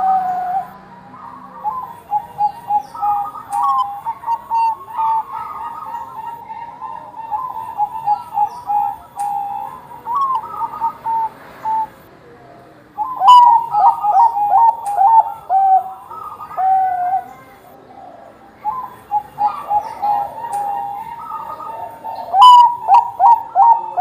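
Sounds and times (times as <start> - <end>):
dove cooing: 0.0 - 24.0.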